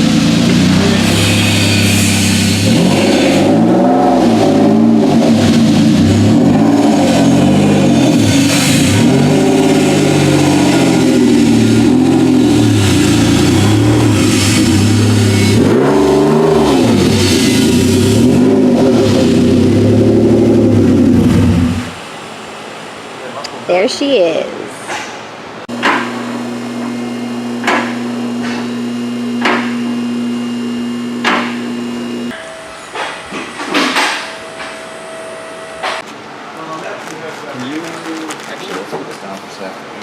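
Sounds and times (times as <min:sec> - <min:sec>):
car engine revving: 0:00.0 - 0:22.0, 0:25.7 - 0:32.4.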